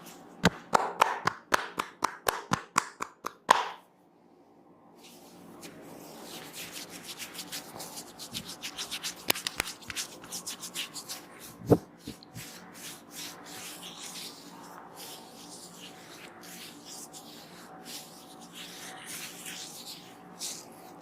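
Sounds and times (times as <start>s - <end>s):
hands rubbing hair: 5.0s - 21.0s.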